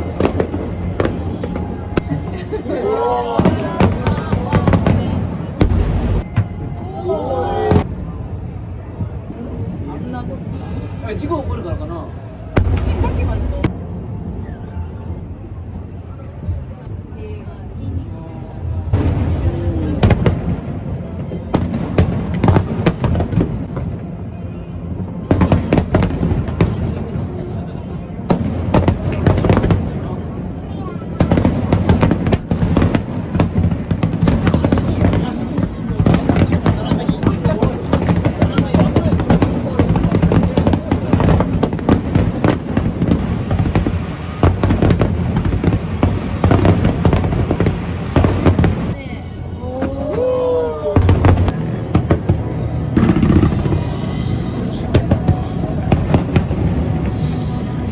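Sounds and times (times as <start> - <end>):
fireworks bursting with sharp bangs: 0.0 - 6.8, 7.6 - 14.2, 18.5 - 27.3, 28.2 - 57.9
low rumble of explosions: 0.0 - 57.9
low rumble: 49.6 - 57.9.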